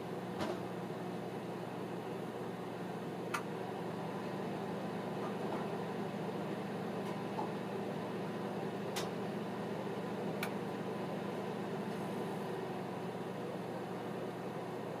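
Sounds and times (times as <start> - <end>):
microwave oven humming: 0.0 - 15.0.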